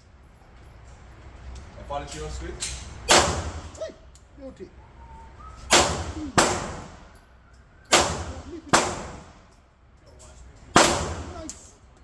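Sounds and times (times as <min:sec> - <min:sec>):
pistol shots: 0:03.1 - 0:03.8, 0:05.7 - 0:07.0, 0:07.9 - 0:09.4, 0:10.7 - 0:11.4.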